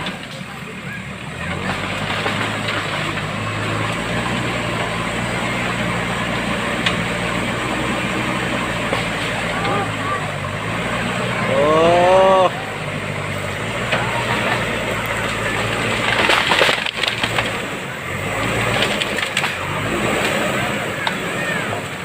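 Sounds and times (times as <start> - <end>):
diesel engine running: 0.0 - 22.0
rattling noise: 13.1 - 20.4.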